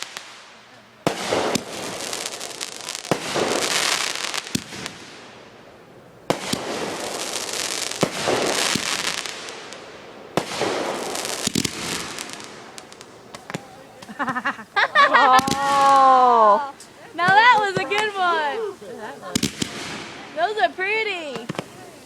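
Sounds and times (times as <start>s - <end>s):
firework bangs: 0.0s - 22.0s
firework crackling: 0.0s - 22.0s
single firework pops: 1.0s - 5.2s, 6.3s - 14.4s, 15.4s - 16.0s, 17.2s - 18.2s, 19.3s - 20.2s, 21.3s - 21.8s.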